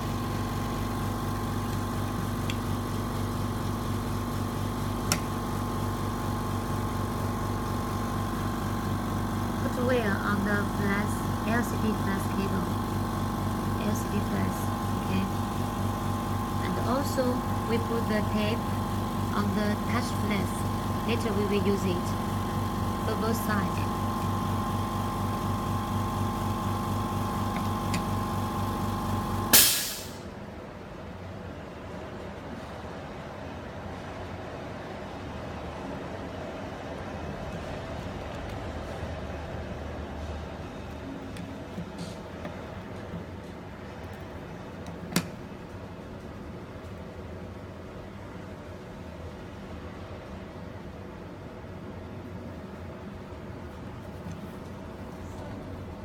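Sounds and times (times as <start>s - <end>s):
low machine hum: 0.0s - 29.6s
air hiss: 29.5s - 30.2s.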